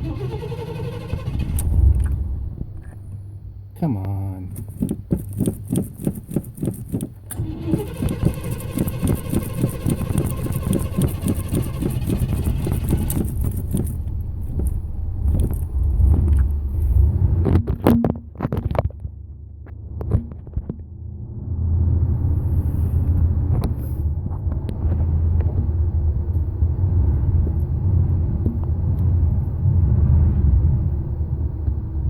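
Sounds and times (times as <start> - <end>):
engine starter cranking: 0.0 - 2.2, 7.2 - 14.0
low engine rumble: 0.0 - 5.7, 6.5 - 32.0.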